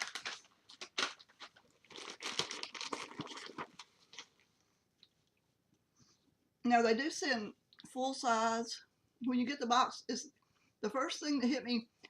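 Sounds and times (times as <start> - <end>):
plastic packaging crinkling: 0.0 - 4.4.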